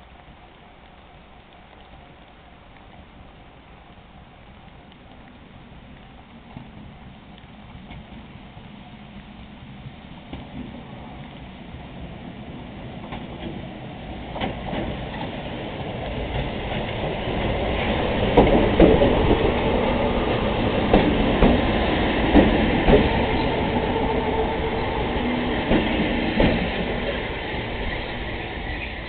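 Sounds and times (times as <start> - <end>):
train motor and gear whine: 0.0 - 29.0
wheels clacking over rail joints: 10.2 - 29.0.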